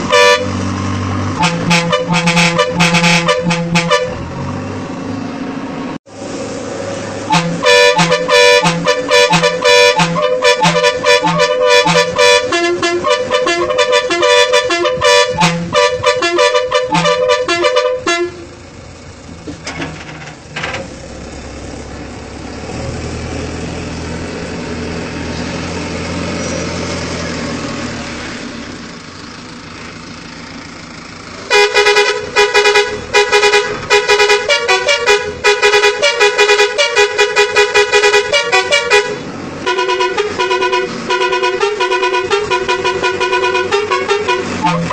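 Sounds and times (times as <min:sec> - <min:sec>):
bus musical air horn: 0:00.0 - 0:00.7, 0:01.3 - 0:04.3, 0:07.2 - 0:18.6, 0:31.4 - 0:44.9.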